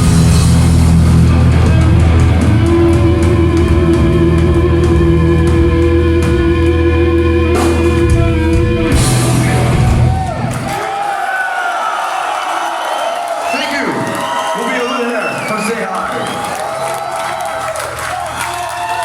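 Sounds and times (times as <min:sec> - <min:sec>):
heavy metal band playing: 0:00.0 - 0:10.8.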